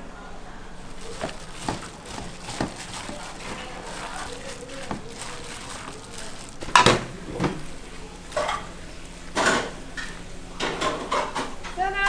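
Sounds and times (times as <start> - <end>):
metal kitchenware clanking: 0.9 - 7.6.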